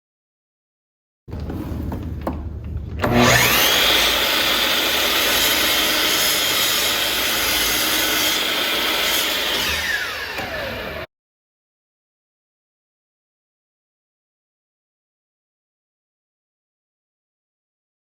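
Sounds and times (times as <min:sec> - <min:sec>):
table saw whining: 0:03.0 - 0:11.1.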